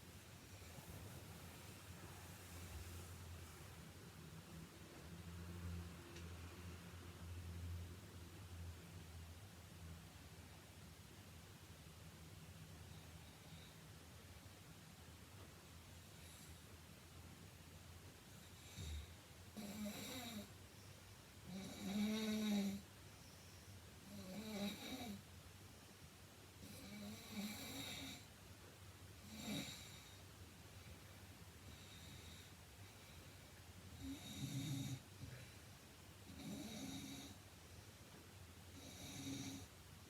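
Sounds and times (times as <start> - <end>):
steady hiss: 0.0 - 5.4
woman snoring: 19.6 - 20.5, 21.5 - 22.8, 24.0 - 25.2, 26.6 - 28.3, 29.2 - 30.1, 34.0 - 35.0, 36.3 - 37.4, 38.8 - 39.7.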